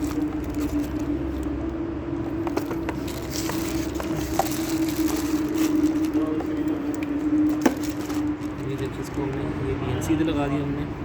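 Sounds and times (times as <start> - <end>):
steady background hum: 0.0 - 10.1.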